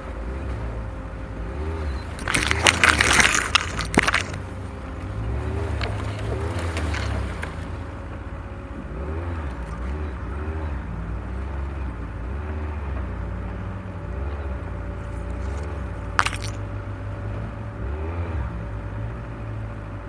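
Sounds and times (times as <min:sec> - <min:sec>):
branches scraping and snapping: 0:02.1 - 0:04.6, 0:05.5 - 0:07.6, 0:15.0 - 0:16.6.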